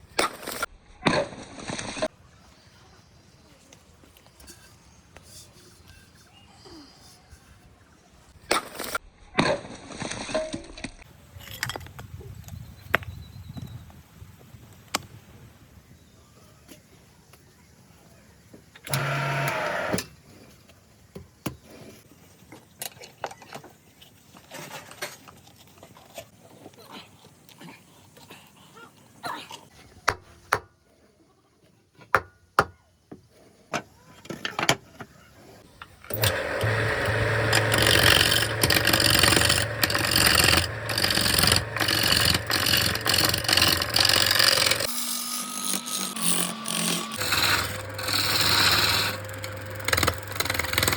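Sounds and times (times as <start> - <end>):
hand tool rasping wood: 36.1 - 50.9.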